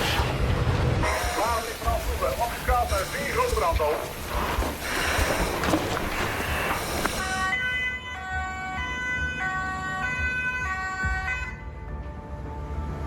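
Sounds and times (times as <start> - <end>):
two-tone emergency siren: 7.0 - 11.9.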